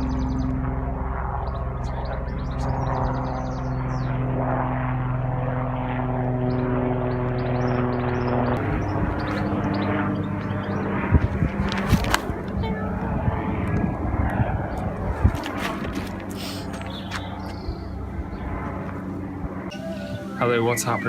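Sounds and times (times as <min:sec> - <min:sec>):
engine drone: 0:00.0 - 0:21.0
bird chirps: 0:16.4 - 0:18.5.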